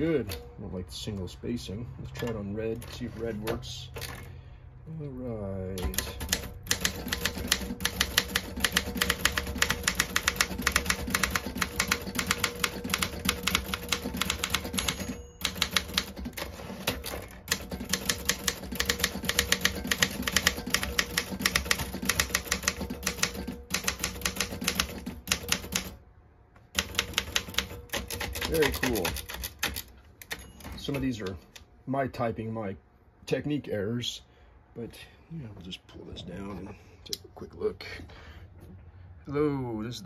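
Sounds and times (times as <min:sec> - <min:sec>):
manual typewriter typing: 0:05.7 - 0:26.0, 0:26.8 - 0:31.2.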